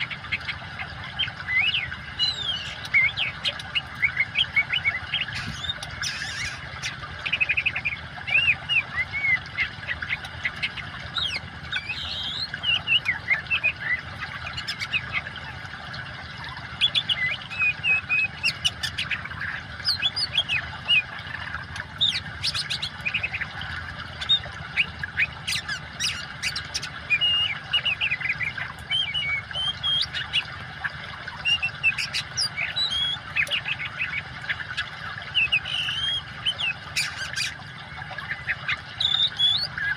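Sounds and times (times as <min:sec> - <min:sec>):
running water: 0:00.0 - 0:39.9
bird singing whistles and chirps: 0:11.1 - 0:14.0, 0:24.2 - 0:30.4, 0:31.4 - 0:33.8, 0:35.3 - 0:37.6, 0:38.3 - 0:39.9.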